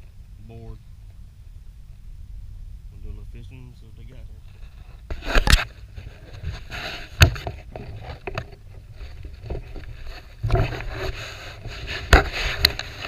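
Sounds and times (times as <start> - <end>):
low rumble: 0.0 - 5.1
rustling and handling noise: 4.0 - 13.0.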